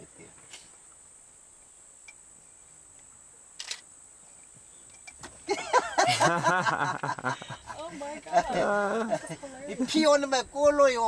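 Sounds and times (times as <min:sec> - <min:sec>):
insects droning: 0:00.0 - 0:11.0.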